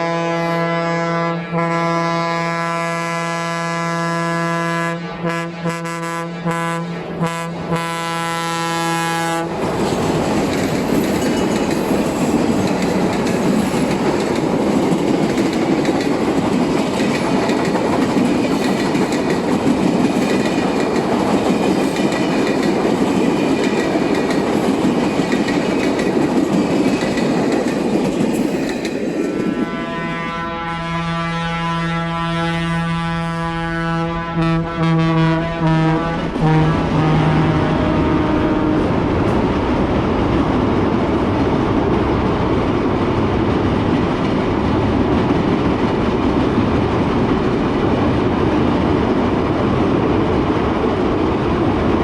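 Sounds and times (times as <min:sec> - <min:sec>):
train horn: 0:00.0 - 0:09.6, 0:29.4 - 0:39.2
train wheels rattling on rails: 0:09.4 - 0:30.2, 0:38.9 - 0:52.0.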